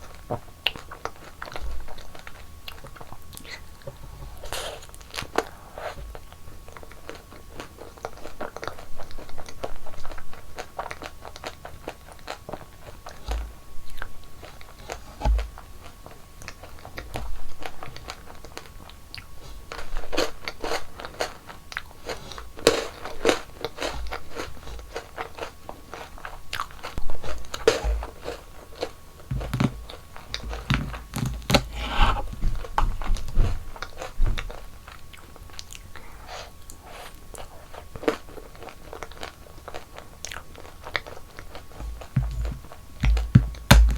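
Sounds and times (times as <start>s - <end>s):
quiet chewing: 0.0s - 43.9s.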